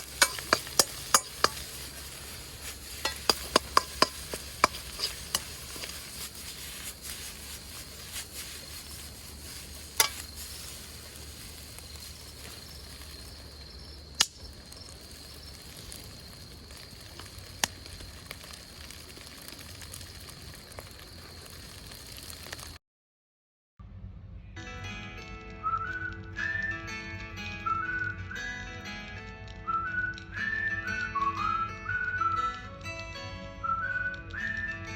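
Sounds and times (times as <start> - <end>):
rice sizzling in a wok: 0.0 - 22.8
sharp clicks: 14.1 - 14.8.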